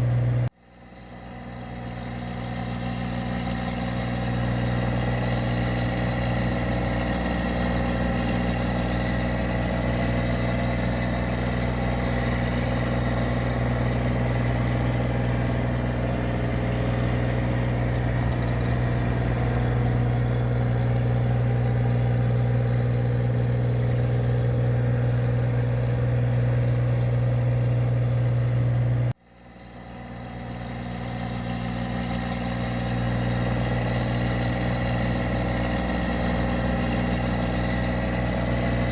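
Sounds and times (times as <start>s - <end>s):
machine engine humming: 0.0s - 0.5s, 4.2s - 29.2s.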